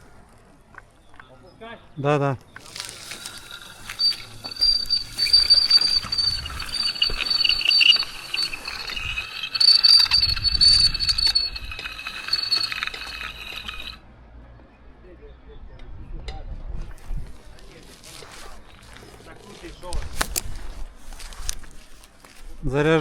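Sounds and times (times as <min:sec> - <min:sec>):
rope squealing through a block: 0:02.6 - 0:14.0.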